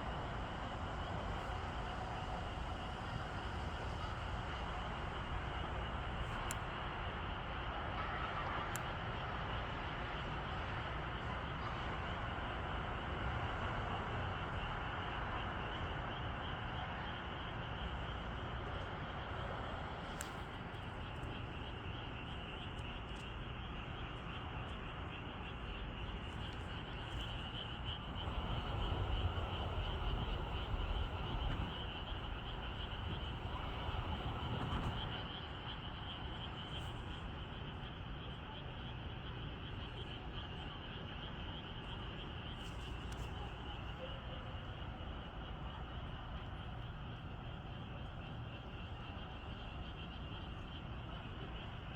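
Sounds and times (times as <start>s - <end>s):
low rumble: 28.0s - 35.2s.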